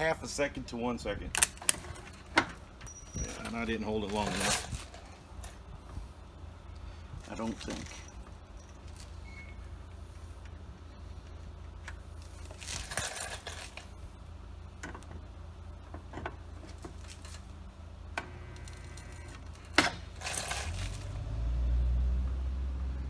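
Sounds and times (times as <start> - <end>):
handling clicks and taps: 2.8 - 3.6.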